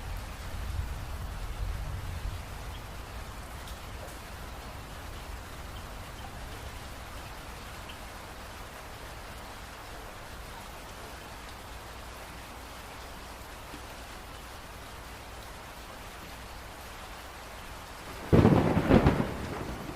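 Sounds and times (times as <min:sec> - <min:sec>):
steady rainfall: 0:00.0 - 0:19.9
thunder clap: 0:18.1 - 0:19.9.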